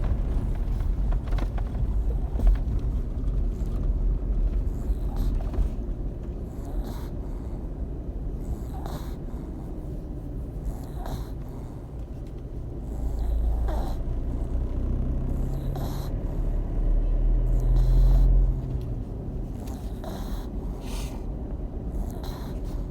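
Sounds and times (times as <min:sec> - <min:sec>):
low rumble: 0:00.0 - 0:06.6
pet snoring: 0:04.7 - 0:05.8, 0:06.4 - 0:07.7, 0:08.3 - 0:22.9.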